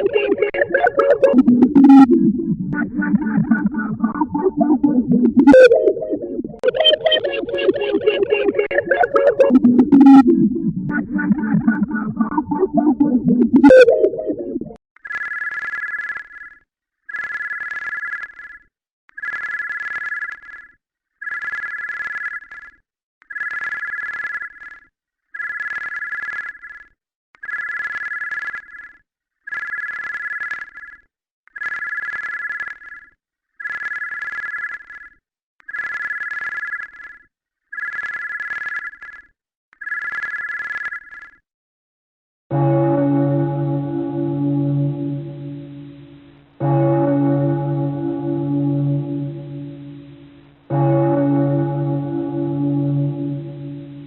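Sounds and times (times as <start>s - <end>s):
electronic alert tone ringing: 0.0s - 14.8s, 42.5s - 54.0s
low bell-like chord: 42.5s - 54.0s.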